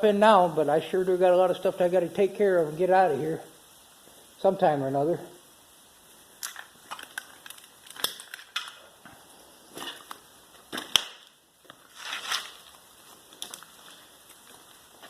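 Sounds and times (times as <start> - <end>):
scraping rustle: 11.7 - 15.0.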